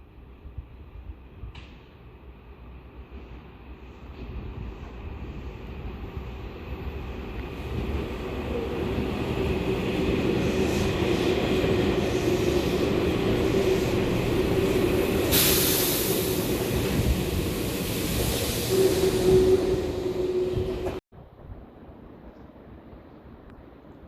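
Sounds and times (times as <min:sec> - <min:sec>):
electric train passing: 0:02.3 - 0:21.0
sudden hiss: 0:15.2 - 0:19.6.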